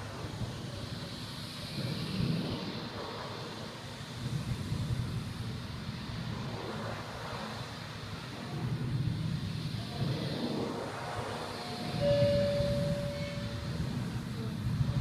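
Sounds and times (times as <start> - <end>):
short steady tone: 11.5 - 13.9.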